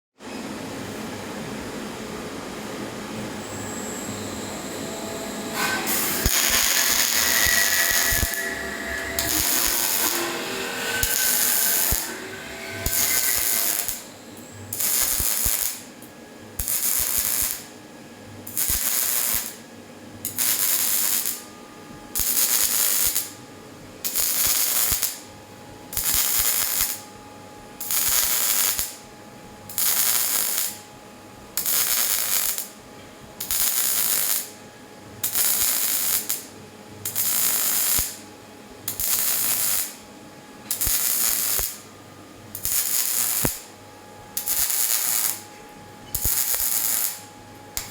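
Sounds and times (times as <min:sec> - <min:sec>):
welding arc crackling: 0:03.4 - 0:16.0, 0:16.6 - 0:17.8, 0:18.4 - 0:19.6, 0:20.2 - 0:21.5, 0:22.1 - 0:23.4, 0:24.0 - 0:25.2, 0:25.9 - 0:27.0, 0:27.8 - 0:29.0, 0:29.7 - 0:30.8, 0:31.6 - 0:32.8, 0:33.4 - 0:34.6, 0:35.2 - 0:38.2, 0:38.9 - 0:40.1, 0:40.7 - 0:41.9, 0:42.5 - 0:47.9.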